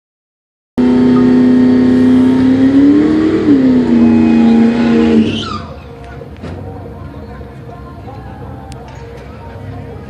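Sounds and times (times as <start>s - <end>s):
supercharged engine at full throttle: 0.8s - 5.8s.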